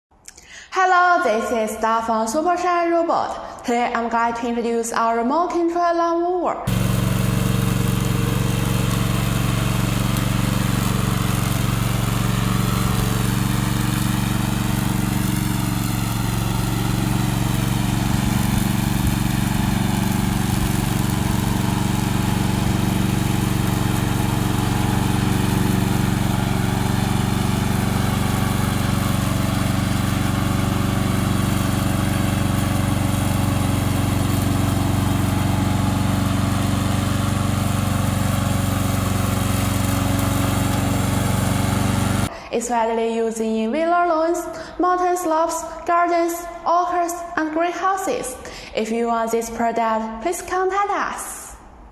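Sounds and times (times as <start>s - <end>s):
lawn mower engine running: 6.7s - 42.3s.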